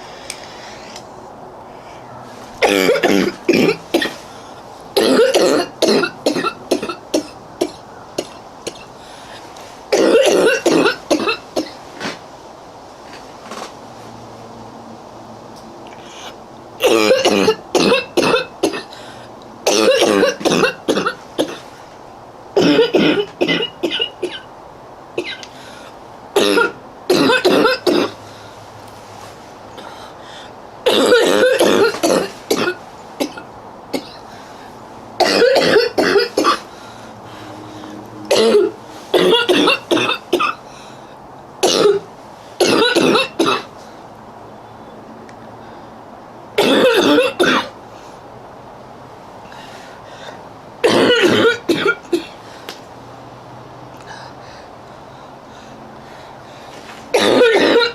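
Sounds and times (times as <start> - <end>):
girl coughing harshly: 2.6 - 4.2, 5.0 - 8.9, 9.9 - 11.8, 16.8 - 18.9, 19.7 - 21.6, 22.6 - 24.5, 26.4 - 28.2, 30.9 - 34.2, 35.2 - 36.6, 38.3 - 40.6, 41.6 - 43.7, 46.6 - 47.7, 50.8 - 52.3, 57.1 - 57.9.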